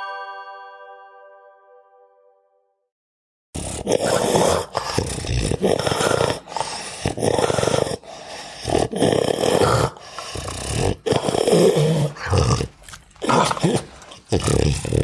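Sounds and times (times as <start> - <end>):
dog growling: 3.6 - 15.0.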